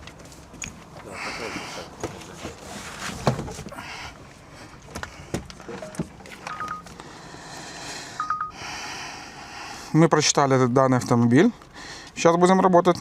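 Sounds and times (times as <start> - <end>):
short electronic beeps: 5.8 - 6.9, 8.2 - 8.6.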